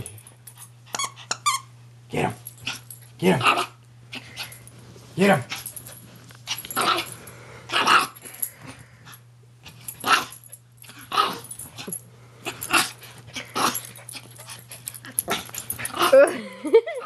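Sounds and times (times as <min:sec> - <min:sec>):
steady low hum: 0:00.0 - 0:17.0
dogs growling and snarling: 0:06.5 - 0:16.6.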